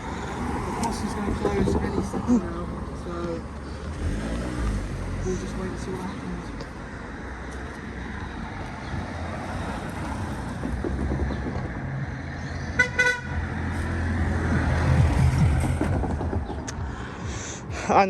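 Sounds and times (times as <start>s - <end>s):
vehicle engine rumbling: 0.0s - 18.0s
horn toots: 12.7s - 13.5s.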